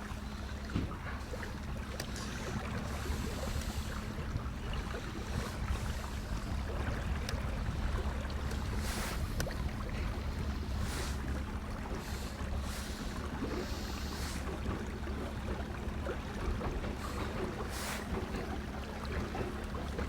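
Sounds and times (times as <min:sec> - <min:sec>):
outboard motor running: 0:00.0 - 0:20.0
water around boat hull: 0:00.0 - 0:20.0.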